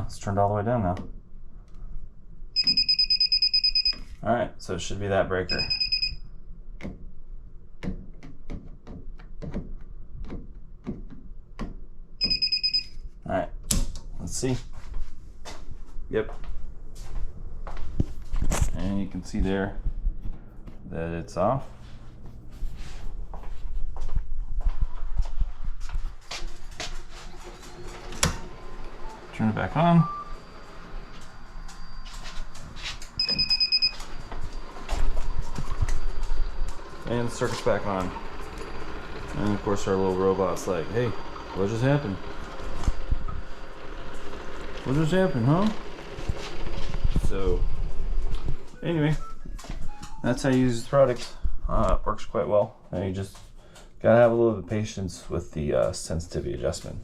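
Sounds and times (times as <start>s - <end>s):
electronic beep: 2.6s - 4.0s, 5.5s - 6.2s, 12.2s - 12.9s, 33.2s - 34.0s.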